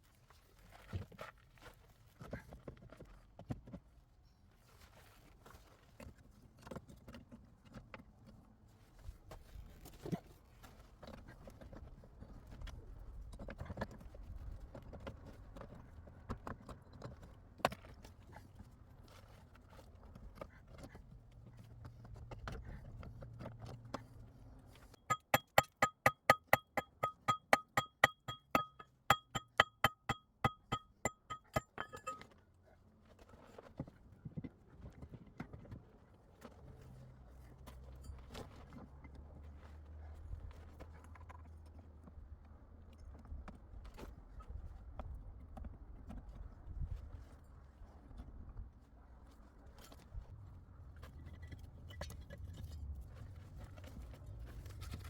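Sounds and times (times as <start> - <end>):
knocks and scraping on rock: 25.0 - 32.3
metal hammer blows ringing: 25.1 - 32.2.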